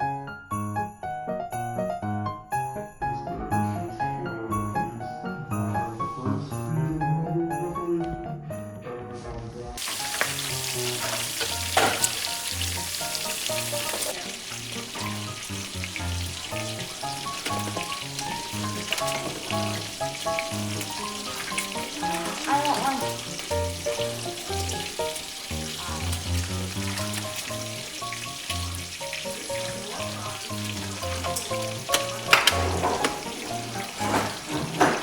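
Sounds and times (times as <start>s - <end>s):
food sizzling in a pan: 9.8s - 35.0s.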